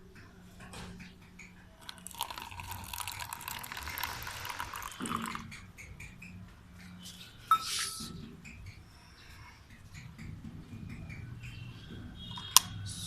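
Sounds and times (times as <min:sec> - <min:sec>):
water pouring into a glass: 0:01.8 - 0:05.6.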